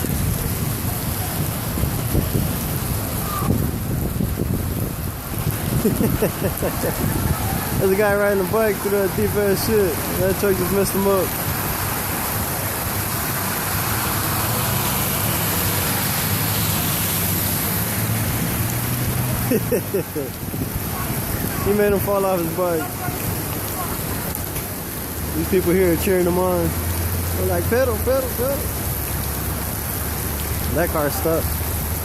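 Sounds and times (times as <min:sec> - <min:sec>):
wind buffeting microphone: 0:00.0 - 0:25.5
steady rain hiss: 0:00.0 - 0:32.0
traffic rushing through flood water: 0:00.0 - 0:32.0
vehicle engine humming: 0:05.0 - 0:32.0.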